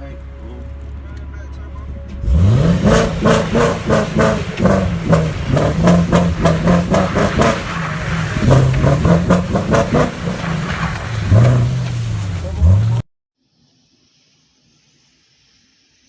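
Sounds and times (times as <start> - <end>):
car engine revving: 0.8 - 13.1.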